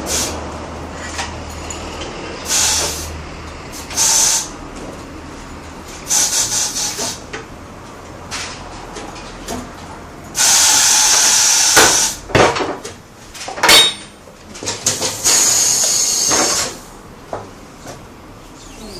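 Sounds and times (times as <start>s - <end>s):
compressed-air tool hissing: 0.0s - 0.4s, 2.4s - 3.1s, 3.7s - 4.5s, 6.1s - 7.2s, 10.4s - 12.2s, 15.2s - 16.8s.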